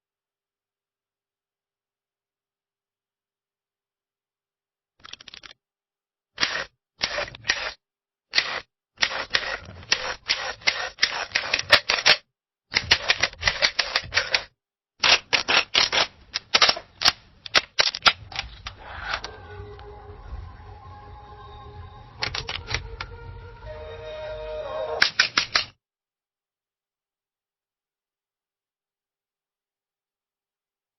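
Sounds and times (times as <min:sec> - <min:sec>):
camera shutter clicking: 0:06.4 - 0:07.8, 0:08.4 - 0:12.2.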